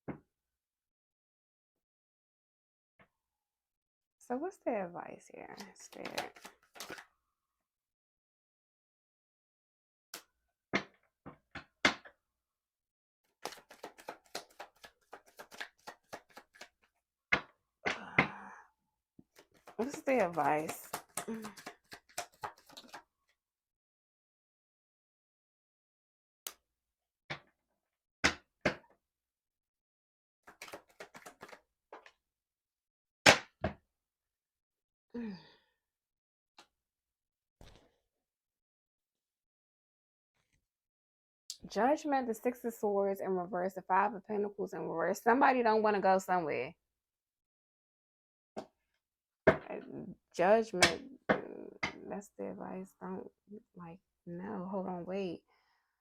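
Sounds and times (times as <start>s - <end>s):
cards clicking while shuffled: 5.9s - 7.0s, 13.4s - 16.9s, 19.4s - 23.0s, 30.5s - 32.1s
cards rustling: 5.9s - 7.0s, 13.4s - 16.8s, 19.4s - 23.0s, 30.5s - 31.6s
person sighing: 17.9s - 18.7s, 35.2s - 35.7s.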